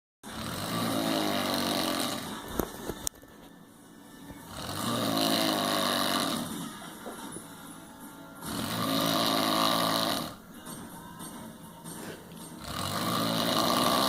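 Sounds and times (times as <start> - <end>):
person snoring loudly: 0.2 - 2.5, 4.4 - 6.8, 8.4 - 10.4, 12.0 - 14.0.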